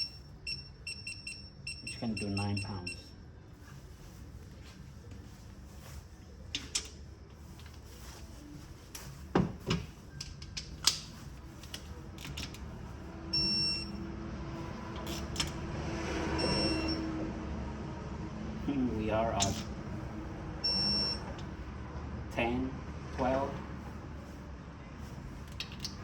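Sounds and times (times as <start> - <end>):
high-pitched torque wrench beeps: 0.0 - 3.1, 13.3 - 14.0, 16.4 - 17.1, 20.6 - 21.2.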